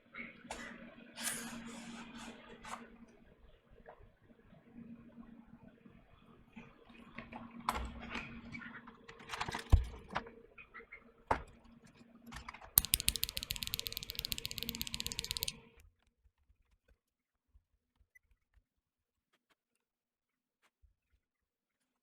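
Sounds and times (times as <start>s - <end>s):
mechanical keyboard typing: 12.8s - 15.6s.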